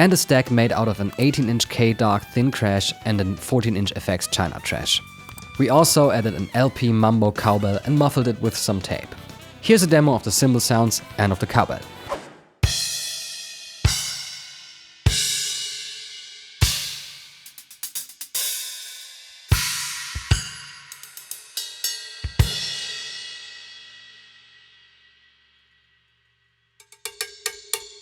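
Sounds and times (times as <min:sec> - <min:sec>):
cymbal crashes ringing out: 0:12.6 - 0:17.4, 0:18.5 - 0:25.4.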